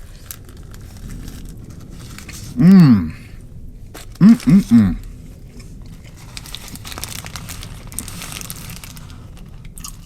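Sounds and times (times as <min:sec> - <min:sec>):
food wrapper crinkling: 0:00.0 - 0:02.6, 0:05.6 - 0:10.0.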